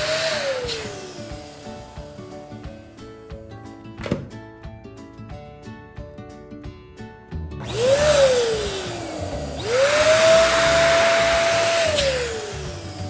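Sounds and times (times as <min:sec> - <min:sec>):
electric balloon pump motor whine: 0:00.0 - 0:02.2, 0:07.6 - 0:13.0
air hissing: 0:00.0 - 0:02.7, 0:08.0 - 0:13.0.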